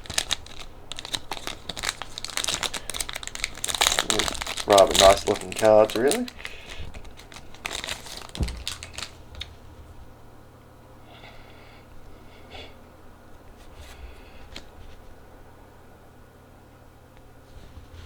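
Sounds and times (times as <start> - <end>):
cards sliding: 0.0 - 9.6
trading cards clicking and rustling: 0.0 - 9.6.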